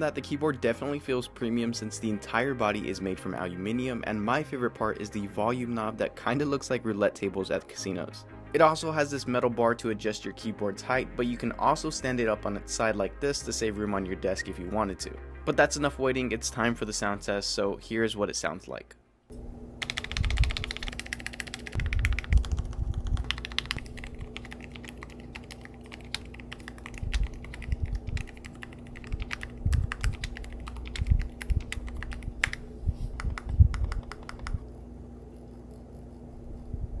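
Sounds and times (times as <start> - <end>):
mechanical keyboard typing: 19.8 - 32.6, 33.2 - 34.6.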